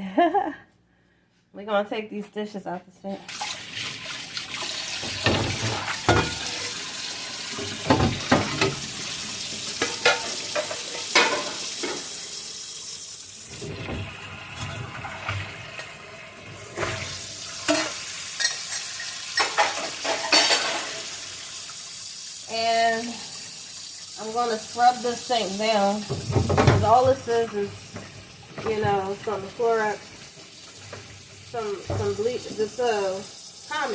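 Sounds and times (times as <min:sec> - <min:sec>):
running water hiss: 0:03.2 - 0:13.8, 0:16.7 - 0:33.9
dishes and pots clattering: 0:05.0 - 0:06.8, 0:07.6 - 0:12.2, 0:16.8 - 0:21.2, 0:26.1 - 0:29.3.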